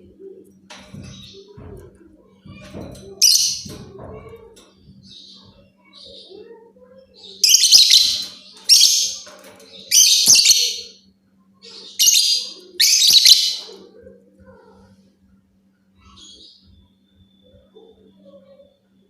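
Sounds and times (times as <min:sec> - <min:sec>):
lovebird shrill chirping: 0:09.9 - 0:11.0.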